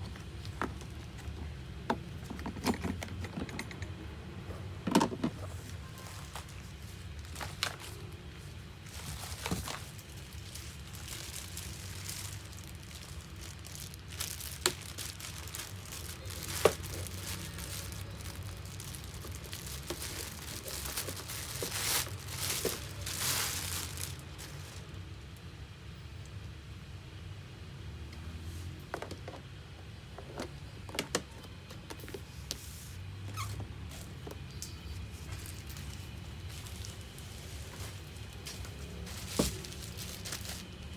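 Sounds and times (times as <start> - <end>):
plastic packaging crinkling: 5.6 - 25.0, 35.1 - 40.9.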